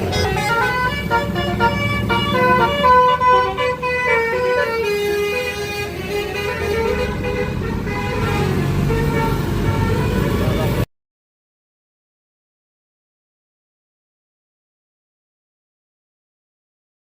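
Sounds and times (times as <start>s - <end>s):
multi-tone bus horn melody: 0.0s - 10.8s
low rumble of bus engine: 0.0s - 10.9s.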